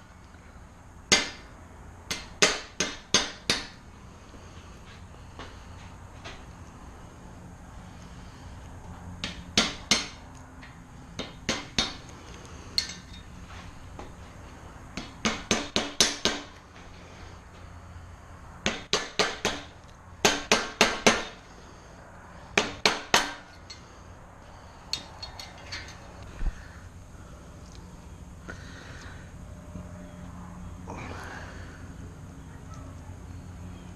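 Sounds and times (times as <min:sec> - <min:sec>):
hammer striking metal: 0:01.1 - 0:01.5, 0:02.1 - 0:03.8, 0:09.2 - 0:10.2, 0:11.2 - 0:12.1, 0:12.8 - 0:13.2, 0:15.0 - 0:16.6, 0:18.6 - 0:21.4, 0:22.6 - 0:23.8, 0:24.9 - 0:26.0.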